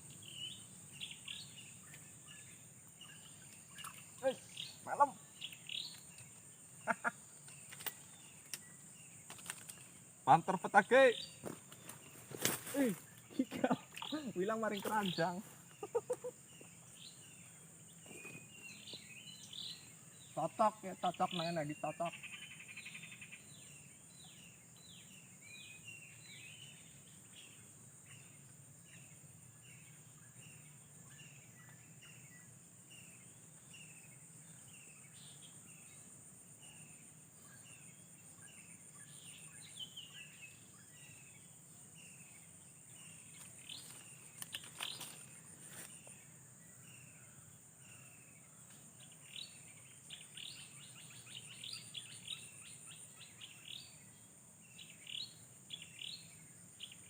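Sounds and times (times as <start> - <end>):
high-pitched insect drone: 10.2 - 25.0.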